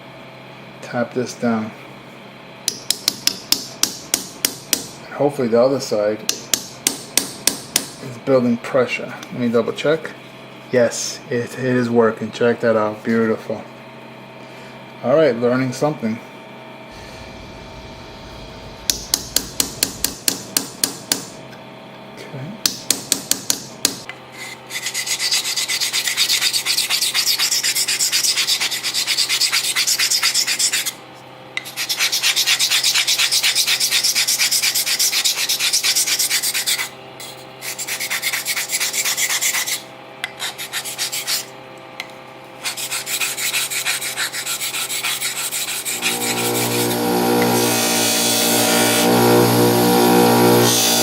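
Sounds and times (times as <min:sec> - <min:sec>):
machine hum: 0:13.7 - 0:22.3, 0:41.1 - 0:51.0
raspy sanding of metal: 0:42.6 - 0:51.0.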